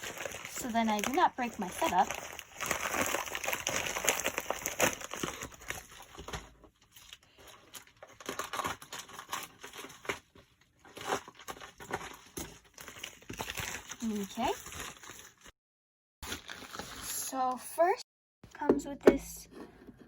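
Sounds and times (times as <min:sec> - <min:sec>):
packaging crinkling: 0:00.0 - 0:15.5, 0:16.2 - 0:17.0
package being torn open: 0:02.1 - 0:15.5, 0:16.2 - 0:17.0.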